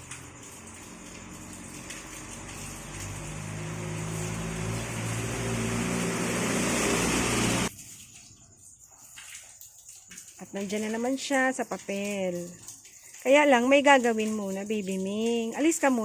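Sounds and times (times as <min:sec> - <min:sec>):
motor vehicle engine: 0:00.0 - 0:07.7.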